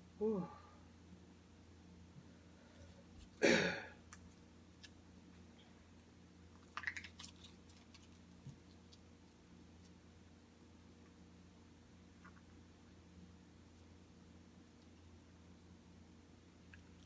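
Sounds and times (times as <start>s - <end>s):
chewing clicks and smacks: 6.6s - 8.0s.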